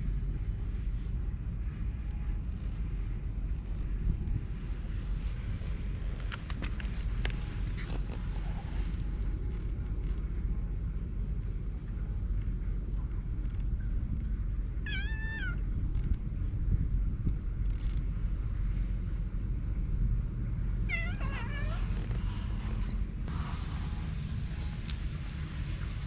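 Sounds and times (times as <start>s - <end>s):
steady low rumble: 0.0s - 26.0s
cat meowing: 14.8s - 15.6s, 20.9s - 22.0s.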